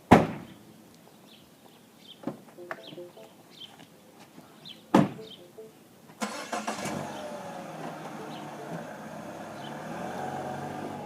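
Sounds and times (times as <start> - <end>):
faint high chirps: 2.6 - 3.8, 4.6 - 5.8.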